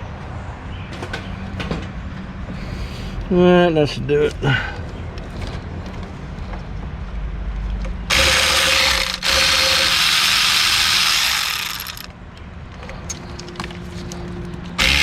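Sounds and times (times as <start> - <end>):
power ratchet spinning: 8.1 - 12.1, 14.8 - 15.0.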